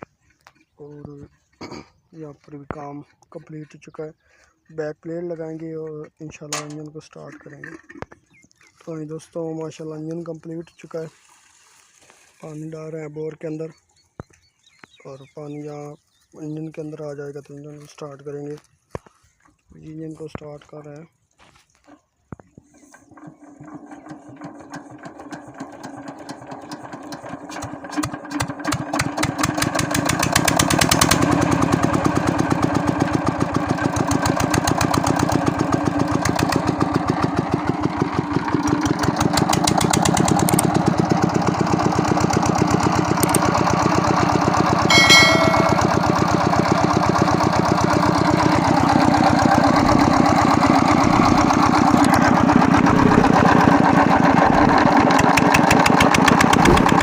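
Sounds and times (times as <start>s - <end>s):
diesel engine starting and running: 22.9s - 44.9s, 45.7s - 57.0s
brief high-pitched tone: 44.9s - 46.4s.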